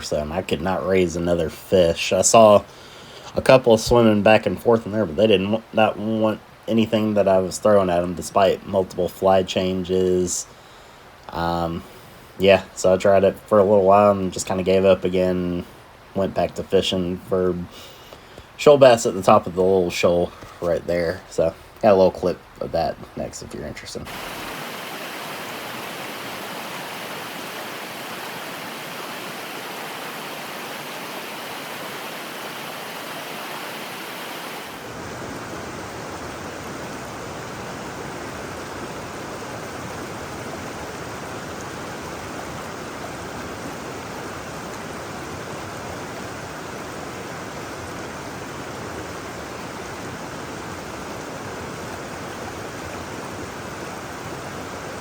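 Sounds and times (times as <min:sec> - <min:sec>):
river rushing over rocks: 0:24.1 - 0:55.0.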